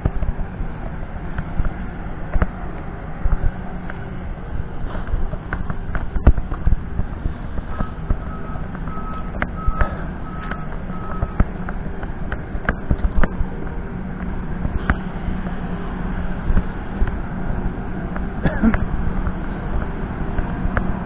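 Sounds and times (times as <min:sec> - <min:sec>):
diesel engine humming: 0:00.0 - 0:21.0
reversing alarm beeping: 0:07.6 - 0:11.5.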